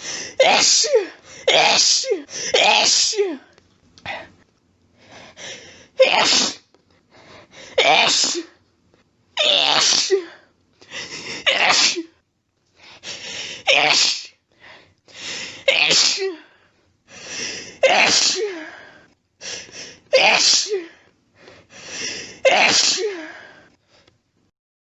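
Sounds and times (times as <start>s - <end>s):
person sneezing: 0.0s - 3.5s, 6.0s - 6.7s, 7.7s - 8.6s, 9.4s - 10.4s, 11.2s - 12.2s, 13.5s - 14.4s, 15.5s - 16.5s, 17.5s - 18.7s, 20.1s - 21.0s, 22.0s - 23.4s.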